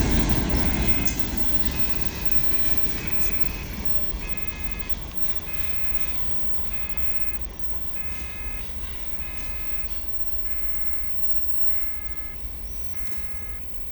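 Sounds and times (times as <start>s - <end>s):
freight train rumbling past: 0.0s - 8.6s
level crossing warning beeps: 0.0s - 13.9s.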